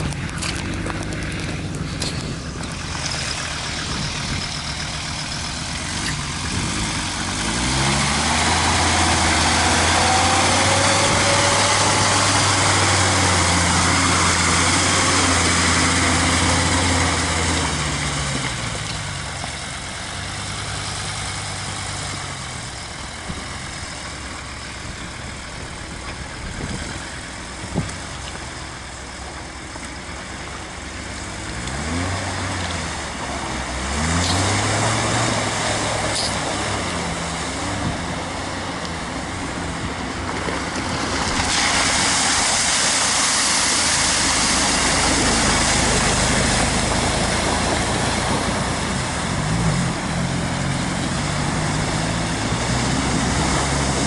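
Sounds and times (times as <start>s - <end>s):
vehicle engine revving: 0.0s - 28.8s, 29.6s - 54.0s.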